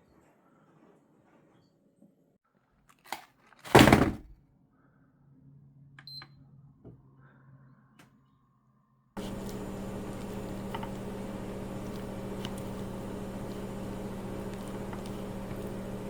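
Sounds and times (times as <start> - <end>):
microwave door shutting: 9.2 - 16.0
microwave hum: 9.2 - 16.0.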